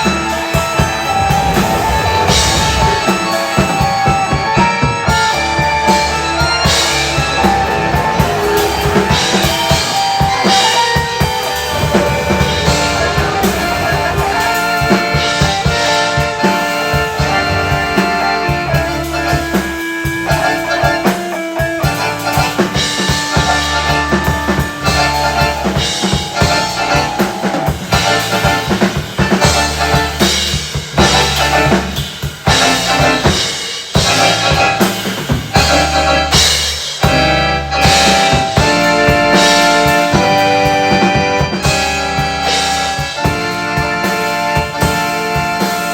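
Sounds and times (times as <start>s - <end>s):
bass line: 0.0s - 21.2s, 21.8s - 30.4s
drum kit: 0.0s - 45.9s
held keyboard notes: 0.0s - 45.9s.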